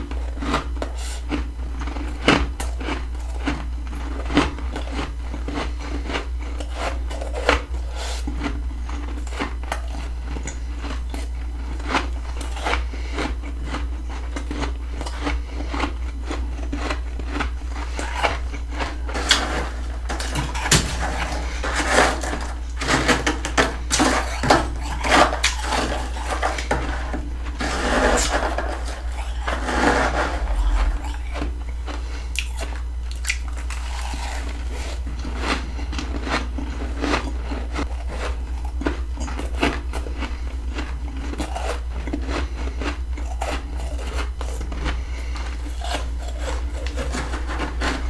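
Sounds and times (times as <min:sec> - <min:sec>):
steady low hum: 0:00.0 - 0:48.0
crunching frost: 0:14.5 - 0:37.1.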